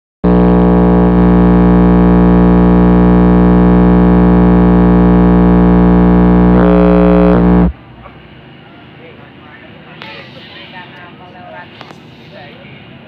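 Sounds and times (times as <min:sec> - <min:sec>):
buzzing synthesizer tone: 0:00.2 - 0:07.8.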